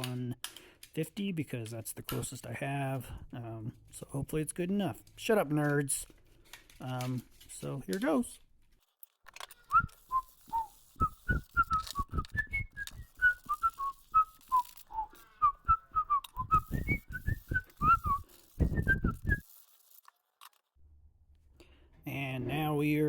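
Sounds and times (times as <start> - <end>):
sandpaper rubbing strokes: 9.8 - 20.3.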